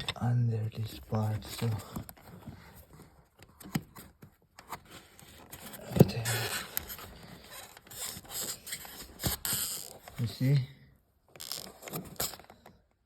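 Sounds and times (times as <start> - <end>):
tool scraping plastic trim: 3.6 - 10.2.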